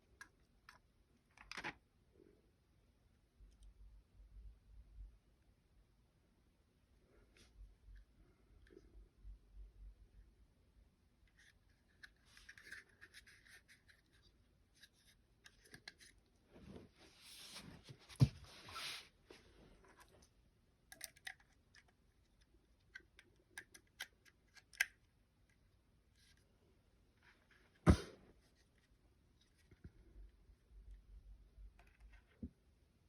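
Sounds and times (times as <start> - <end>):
pistol parts scraping and rubbing: 11.4 - 16.2.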